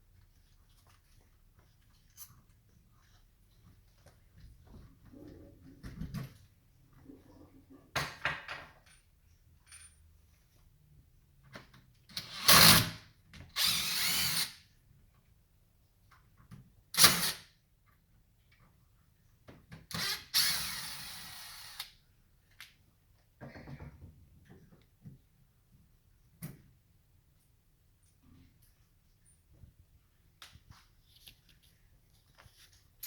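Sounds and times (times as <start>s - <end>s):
cordless power drill running: 13.6s - 14.5s, 20.0s - 21.8s.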